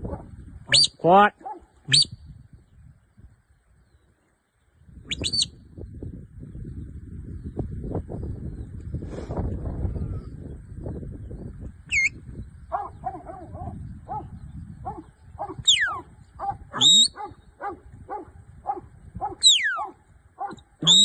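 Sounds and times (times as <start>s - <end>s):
low wind rumble: 0.0s - 0.8s, 1.4s - 20.9s
high whistle-like calls: 0.7s - 1.0s, 1.9s - 2.2s, 5.0s - 5.6s, 11.9s - 12.2s, 15.6s - 16.1s, 16.8s - 17.2s, 19.4s - 19.9s, 20.8s - 21.0s
dog barking: 1.4s - 1.7s, 12.7s - 20.7s.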